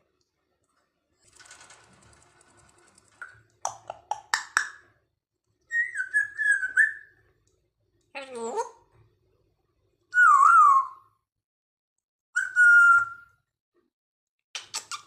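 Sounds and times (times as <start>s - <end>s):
parrot clicks and calls: 3.7s - 4.8s, 14.6s - 15.0s
parrot wavering whistle: 5.7s - 7.1s, 10.2s - 11.0s, 12.4s - 13.2s.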